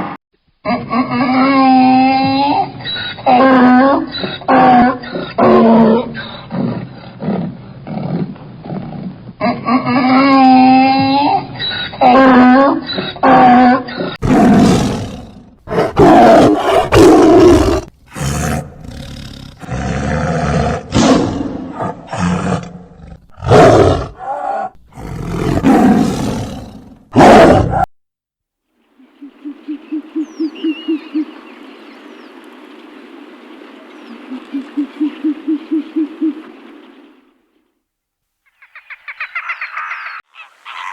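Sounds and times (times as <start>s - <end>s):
large animal roaring and growling: 12.0s - 27.9s
faint bird chirp: 28.8s - 32.6s
fast low hoots: 29.0s - 31.5s, 34.0s - 37.0s.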